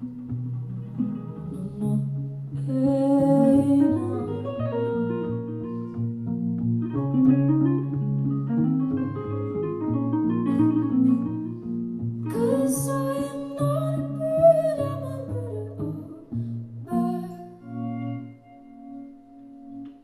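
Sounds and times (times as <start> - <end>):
guitar notes: 0.0 - 20.0
person singing: 1.4 - 5.7, 12.3 - 18.4.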